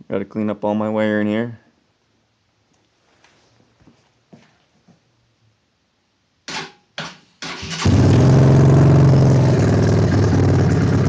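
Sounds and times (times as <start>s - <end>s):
dirt bike engine turning over: 7.4s - 11.0s
dirt bike engine running loud: 7.8s - 11.0s.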